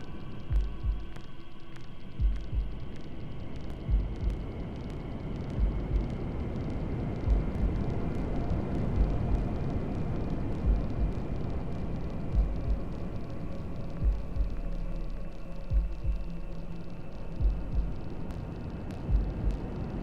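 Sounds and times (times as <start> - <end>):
heartbeat thumps: 0.4 - 1.3, 2.2 - 3.0, 3.8 - 4.5, 5.5 - 6.2, 7.2 - 8.0, 8.9 - 9.5, 10.6 - 11.3, 12.3 - 13.0, 13.9 - 16.6, 17.2 - 18.1, 19.0 - 19.8.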